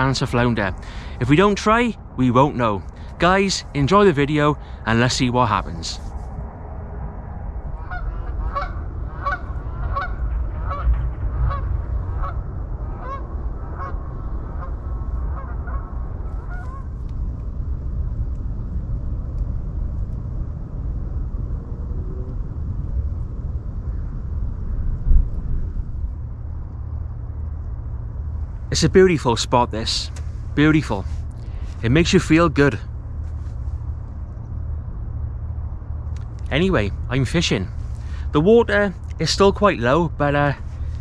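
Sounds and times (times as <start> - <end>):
low wind rumble: 0.0 - 41.0
geese honking: 7.8 - 16.9.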